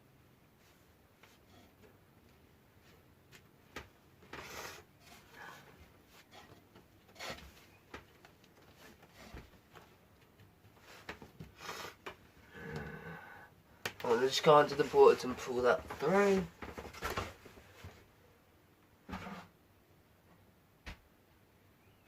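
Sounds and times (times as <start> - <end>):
wires rubbing and scraping: 4.2 - 9.9, 14.0 - 17.1.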